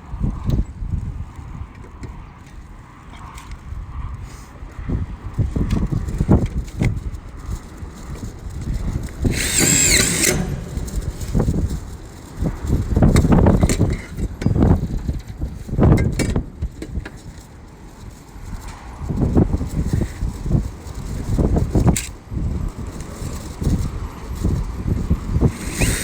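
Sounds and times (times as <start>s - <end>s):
power drill whining: 8.1s - 14.8s, 22.9s - 26.0s.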